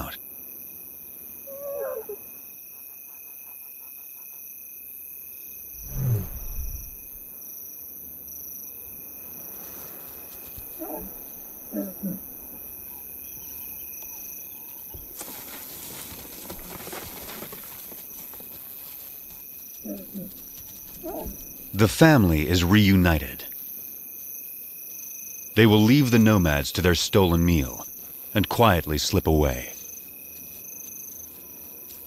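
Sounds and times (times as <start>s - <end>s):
lioness calling: 1.4s - 2.2s, 10.7s - 13.1s, 19.8s - 21.5s
insect trilling: 1.4s - 4.8s, 18.8s - 21.8s.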